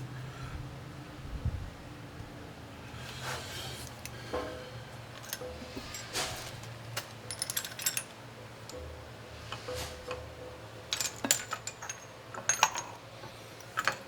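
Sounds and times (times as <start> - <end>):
metal tools clinking: 3.8 - 8.9, 9.5 - 14.0.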